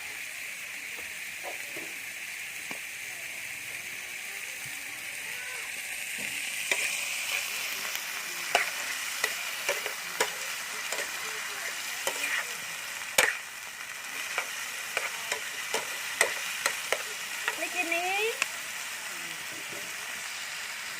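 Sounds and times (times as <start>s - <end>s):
food sizzling in a pan: 0.0s - 20.9s.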